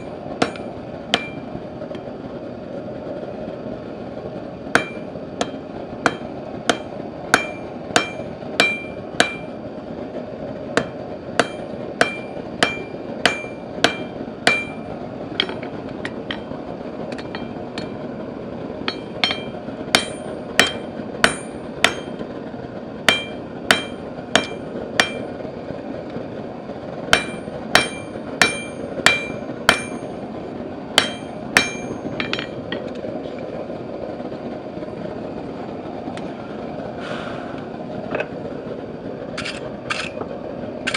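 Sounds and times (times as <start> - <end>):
hammer striking steel on anvil: 0.0 - 1.5, 4.7 - 9.6, 10.8 - 16.5, 17.1 - 18.0, 18.9 - 22.2, 23.1 - 25.3, 27.1 - 30.2, 31.0 - 32.9.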